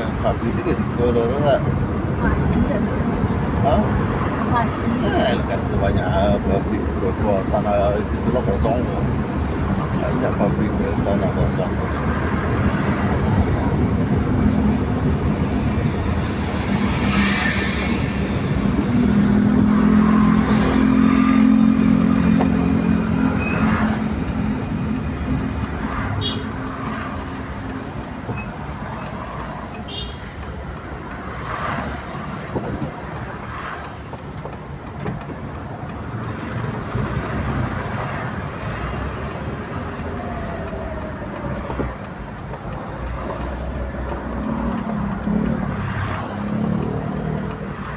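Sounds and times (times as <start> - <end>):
heavy vehicle engine droning: 0.0 - 29.5
traffic noise: 0.0 - 47.9.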